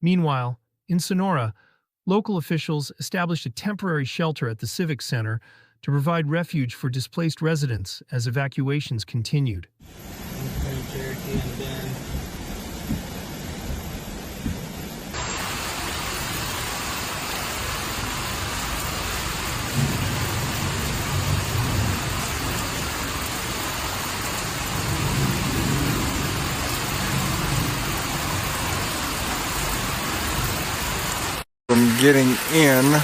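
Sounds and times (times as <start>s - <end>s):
heavy rain falling: 9.8s - 33.0s
low rumble: 10.0s - 22.8s.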